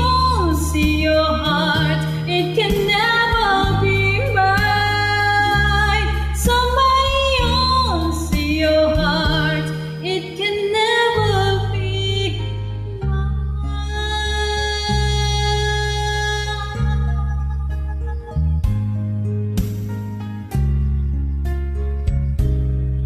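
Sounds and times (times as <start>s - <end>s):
woman singing with vibrato: 0.0s - 18.5s
backing track of sustained chords: 8.9s - 23.0s.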